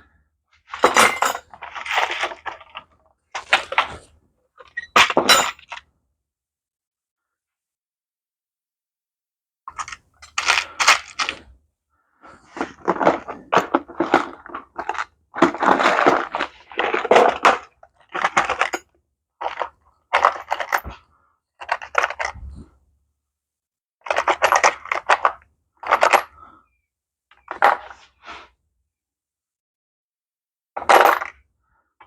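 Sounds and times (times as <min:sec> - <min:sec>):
small metal parts clinking and rattling: 0:09.7 - 0:11.4, 0:12.9 - 0:21.0, 0:21.6 - 0:22.4, 0:24.1 - 0:26.4.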